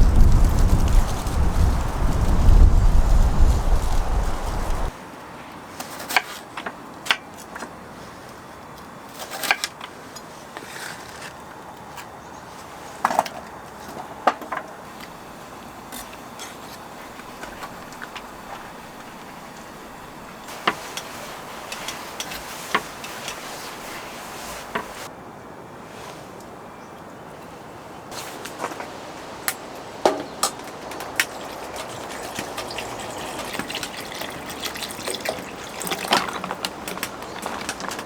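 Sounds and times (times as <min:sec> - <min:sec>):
utensils and dishes clinking: 0:15.9 - 0:25.0, 0:30.4 - 0:38.0.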